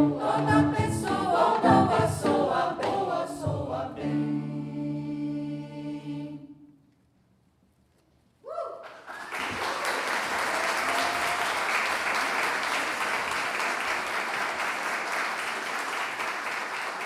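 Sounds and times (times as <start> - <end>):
audience clapping: 8.8 - 17.0.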